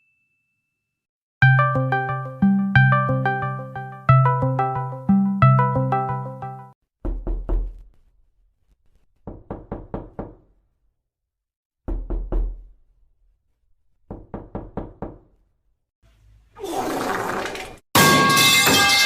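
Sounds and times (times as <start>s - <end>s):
keyboard tune: 1.4s - 6.8s
quick knocks on a door: 9.2s - 10.5s, 11.8s - 12.6s, 14.1s - 15.2s.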